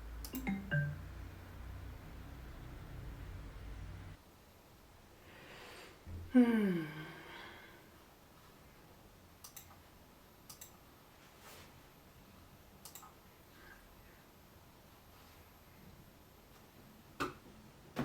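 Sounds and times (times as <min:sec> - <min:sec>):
person sighing: 0:06.2 - 0:07.8
faint clicks: 0:10.5 - 0:10.8, 0:12.8 - 0:13.2.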